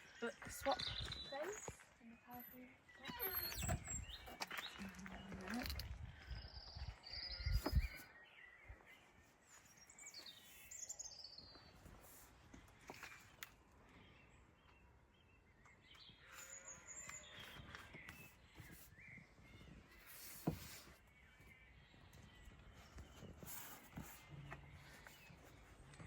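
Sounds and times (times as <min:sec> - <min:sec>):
faint birdsong: 0:00.0 - 0:26.0.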